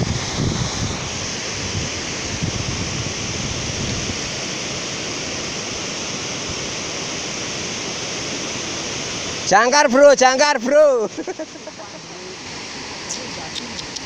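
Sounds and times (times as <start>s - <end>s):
wind buffeting microphone: 0.0s - 6.7s
water rushing: 0.0s - 14.0s.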